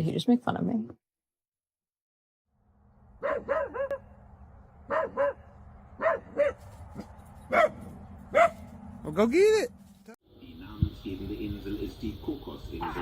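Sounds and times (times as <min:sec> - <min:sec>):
dog barking: 0:03.2 - 0:04.2, 0:04.9 - 0:06.6, 0:07.5 - 0:08.7.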